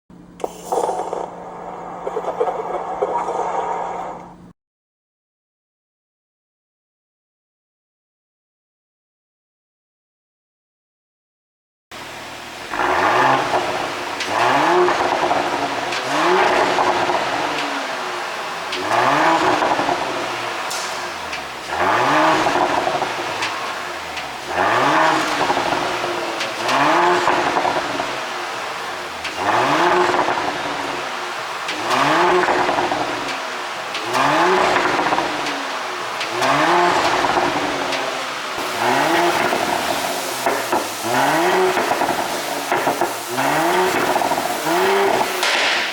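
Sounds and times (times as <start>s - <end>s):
exhaust crackling and popping: 0.3s - 4.5s, 12.0s - 45.9s
car engine revving: 12.0s - 45.9s.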